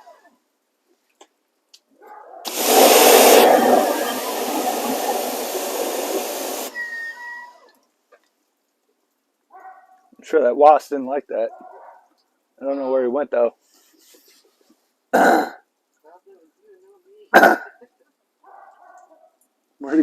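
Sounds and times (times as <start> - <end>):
pressure washer spray jet: 2.5 - 7.0.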